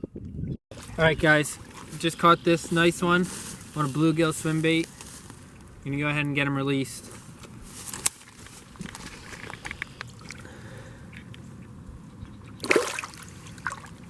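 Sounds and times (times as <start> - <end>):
pond water sloshing and trickling: 0.7 - 5.7, 7.7 - 14.0
sharp water splash: 12.6 - 14.0.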